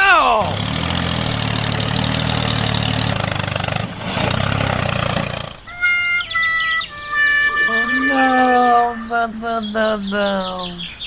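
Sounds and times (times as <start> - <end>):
tractor engine running: 0.0 - 7.8.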